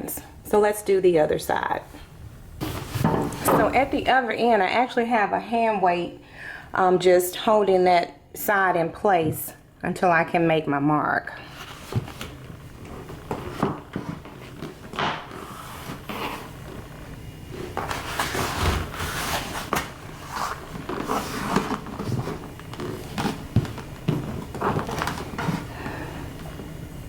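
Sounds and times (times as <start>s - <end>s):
rustling: 11.5s - 26.1s.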